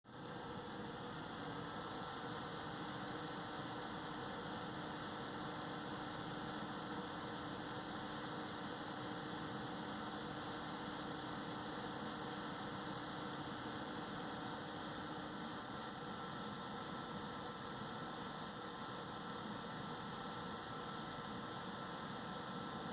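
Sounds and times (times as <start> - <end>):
cooler fan humming and whining: 0.1 - 22.9.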